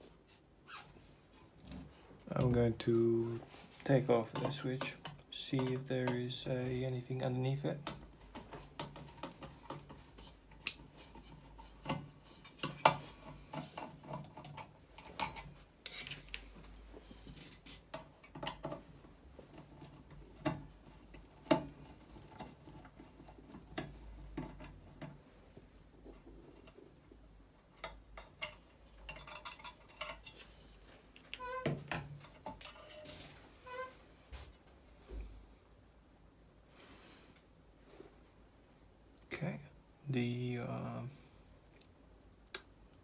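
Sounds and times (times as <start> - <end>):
hand tools clicking and tapping: 7.8 - 16.4.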